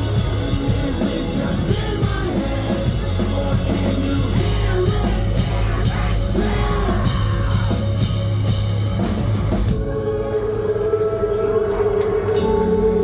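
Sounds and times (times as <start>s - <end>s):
person singing: 0.0s - 8.2s
drum kit: 0.0s - 10.5s
live rock music: 0.0s - 13.0s.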